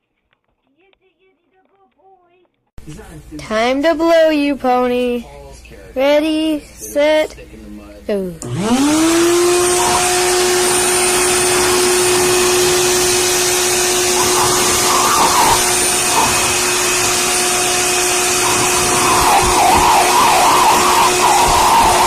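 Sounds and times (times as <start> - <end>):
electric blower running: 8.4 - 22.0.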